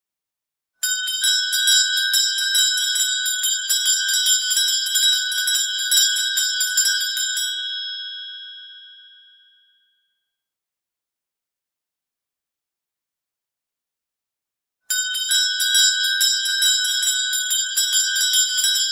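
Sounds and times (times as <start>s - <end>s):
bell rung rapidly: 0.8s - 7.9s, 14.9s - 18.9s.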